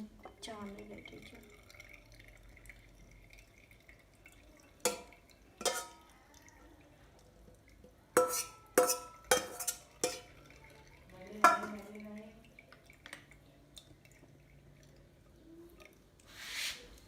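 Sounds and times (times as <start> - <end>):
kitchenware clinking on glass jar: 4.8 - 6.1, 8.2 - 10.5, 11.4 - 12.0.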